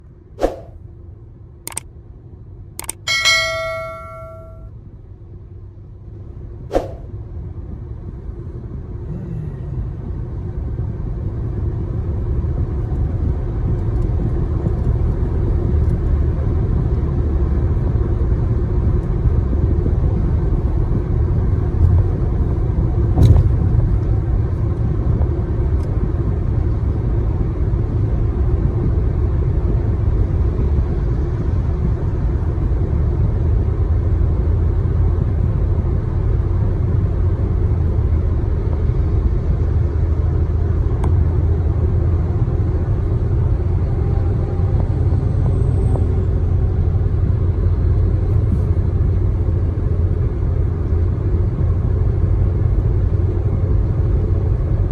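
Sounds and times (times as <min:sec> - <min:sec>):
steady low rumble: 0:00.0 - 0:54.9
sharp click: 0:02.8 - 0:04.6.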